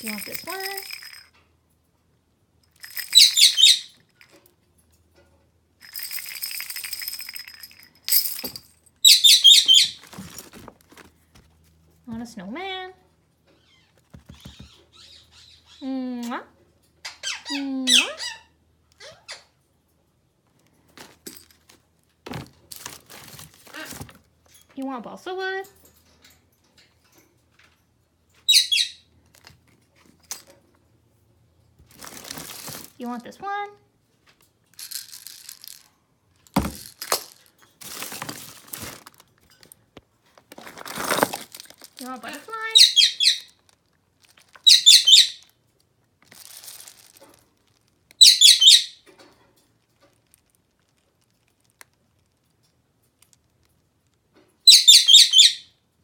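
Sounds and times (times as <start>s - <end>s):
toy jingling rattle: 0.0s - 1.3s, 2.7s - 4.4s, 5.8s - 10.3s, 34.8s - 35.9s, 36.5s - 37.5s
parrot squawks: 9.0s - 10.0s, 42.7s - 43.5s, 44.6s - 45.4s, 48.2s - 49.0s, 54.7s - 55.7s.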